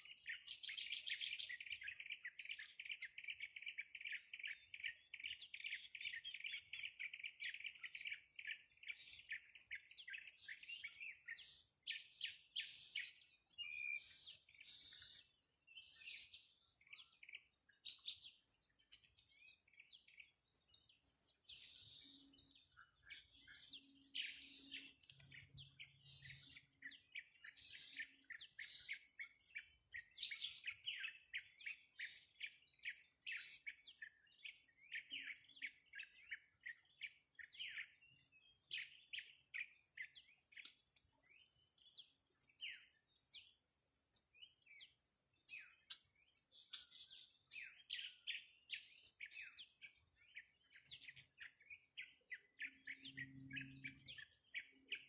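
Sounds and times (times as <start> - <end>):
songbirds chirping: 0.0 - 55.0.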